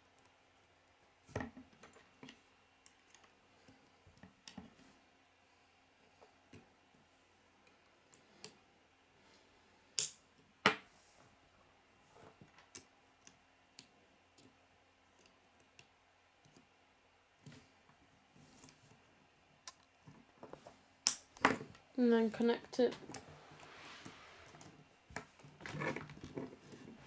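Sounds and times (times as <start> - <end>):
plastic pieces snapping together: 10.0 - 10.8, 21.0 - 21.6.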